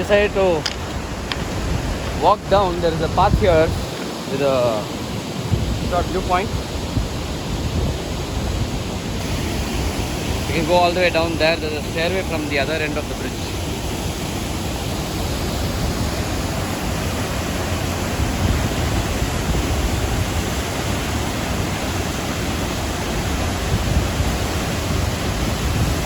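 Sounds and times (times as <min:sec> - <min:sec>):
waterfall rushing: 0:00.0 - 0:26.0.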